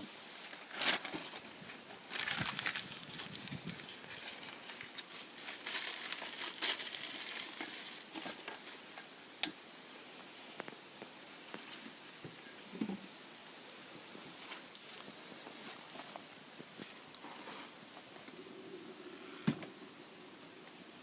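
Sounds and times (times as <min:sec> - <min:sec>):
kindling crinkling and rustling: 0:00.4 - 0:09.6, 0:10.6 - 0:13.0, 0:14.2 - 0:18.4
scattered crackles: 0:00.4 - 0:09.6.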